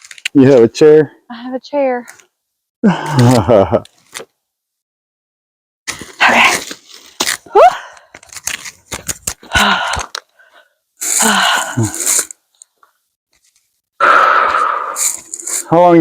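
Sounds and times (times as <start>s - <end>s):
breathy wordless voice bursts: 14.0s - 15.0s.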